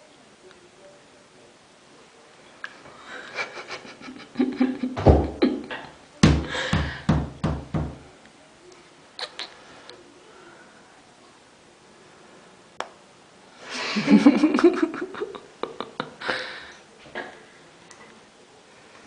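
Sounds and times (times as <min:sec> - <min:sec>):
heavy deep thumps: 0:06.2 - 0:08.0.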